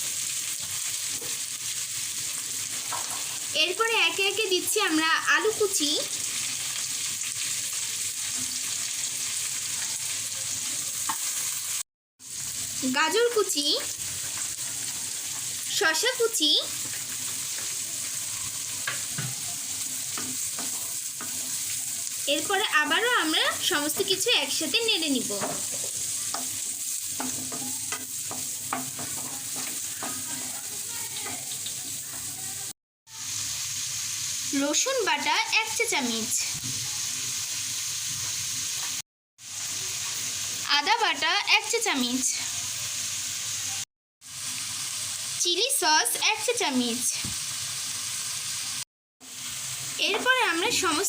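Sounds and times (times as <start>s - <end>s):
vegetables sizzling in hot oil: 0.0s - 51.0s
spatula scraping a pan: 13.8s - 15.6s, 16.8s - 22.2s, 25.4s - 32.3s.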